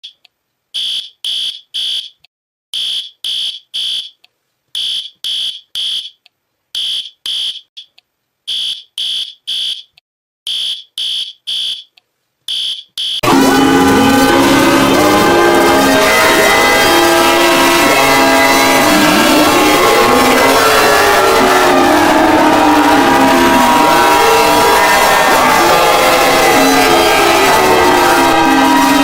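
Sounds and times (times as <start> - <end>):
harsh blaring multi-tone alarm: 0.8 - 2.1, 2.8 - 4.1, 4.8 - 6.1, 6.8 - 7.7, 8.5 - 9.8, 10.5 - 11.9, 12.5 - 29.0
high-pitched electronic alarm beeps: 0.8 - 2.2, 2.8 - 4.2, 4.8 - 6.2, 6.8 - 7.8, 8.5 - 11.9, 12.5 - 13.2.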